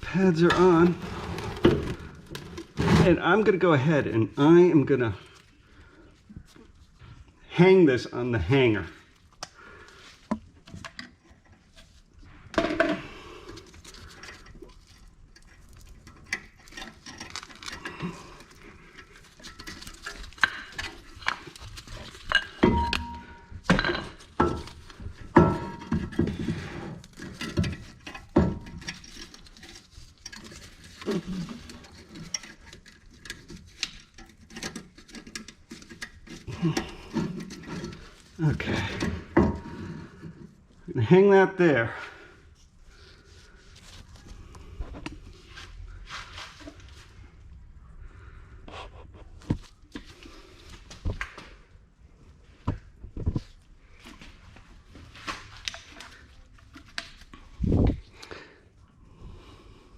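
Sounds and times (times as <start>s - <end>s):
metal clinks and rattles: 14.0s - 39.7s.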